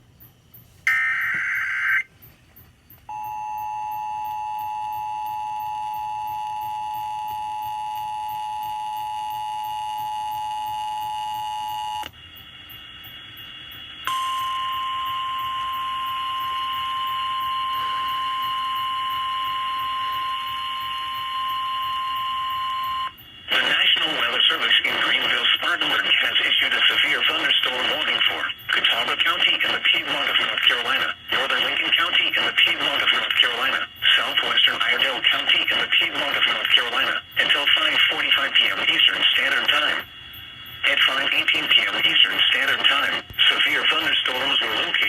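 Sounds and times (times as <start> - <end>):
steady warning tone: 0.0 - 45.0
two-tone attention signal: 0.9 - 2.1, 14.1 - 23.1.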